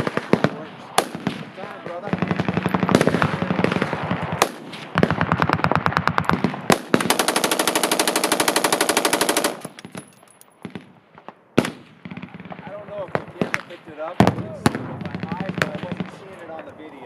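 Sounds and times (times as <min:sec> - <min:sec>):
single gunshots: 0:00.0 - 0:07.2, 0:11.6 - 0:16.2
machine-gun fire: 0:00.0 - 0:10.0.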